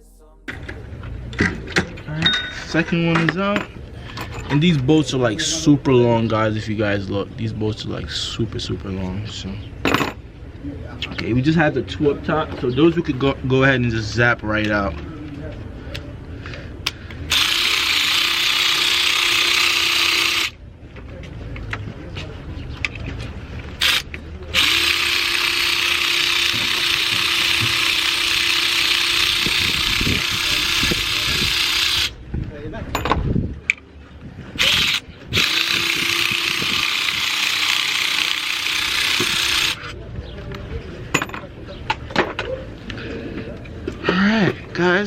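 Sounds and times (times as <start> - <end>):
electric ratchet whirring: 17.3 - 20.6, 23.8 - 32.2, 34.6 - 39.9.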